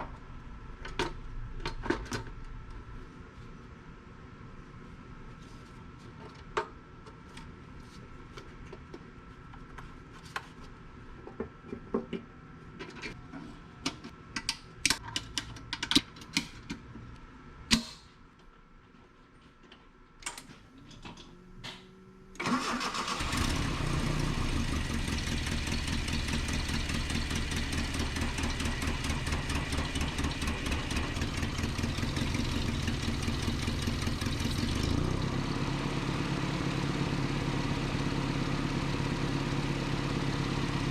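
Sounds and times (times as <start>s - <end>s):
car engine starting and idling: 22.3s - 40.9s.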